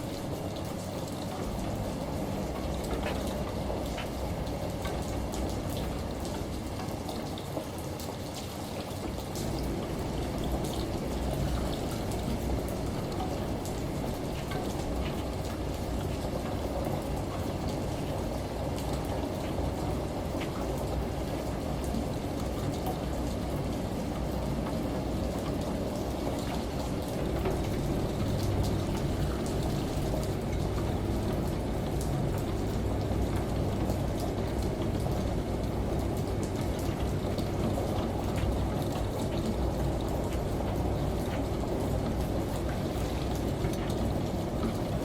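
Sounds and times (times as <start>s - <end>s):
water pattering and sloshing: 0.0s - 45.0s.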